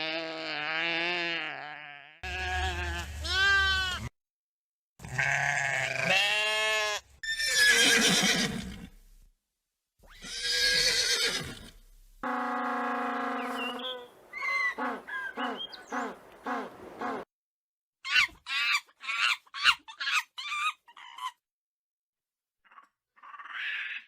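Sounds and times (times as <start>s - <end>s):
wavering animal calls: 12.2s - 17.2s.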